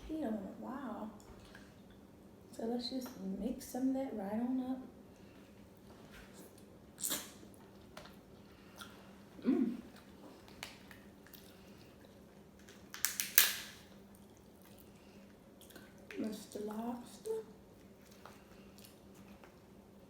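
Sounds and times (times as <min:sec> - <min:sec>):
wet squishing and smacking: 0:09.9 - 0:16.3.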